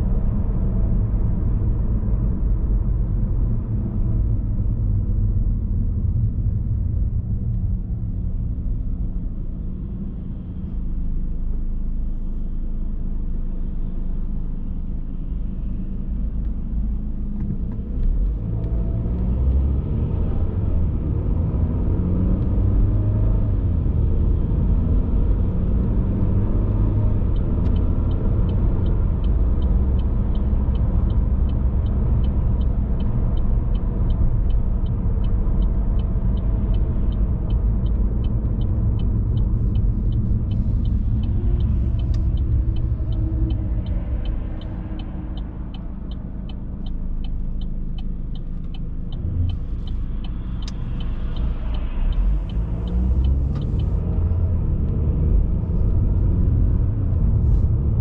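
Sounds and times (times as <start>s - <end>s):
car road and engine rumble: 0.0s - 58.0s
steady ticking: 27.3s - 54.1s.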